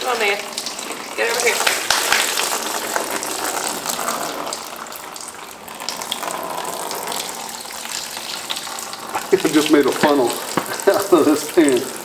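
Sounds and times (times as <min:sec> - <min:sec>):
liquid pouring into a pan: 0:00.5 - 0:12.0.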